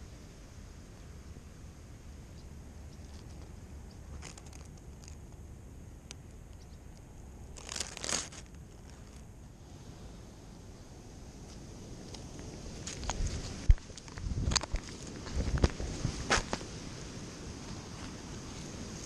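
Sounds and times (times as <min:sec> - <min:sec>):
wind rumbling on microphone: 0:00.0 - 0:19.0
crinkling and crackling: 0:02.9 - 0:09.3, 0:11.4 - 0:16.8.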